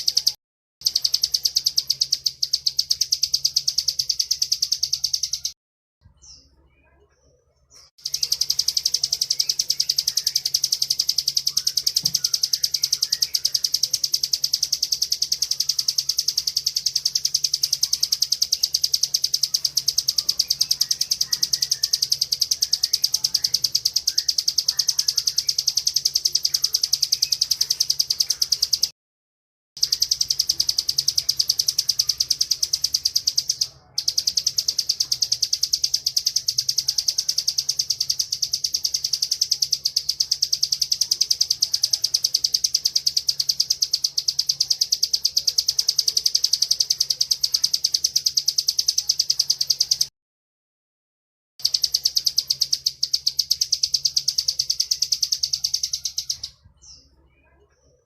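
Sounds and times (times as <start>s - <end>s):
bird singing buzzing trill: 0.0s - 5.6s, 7.9s - 28.9s.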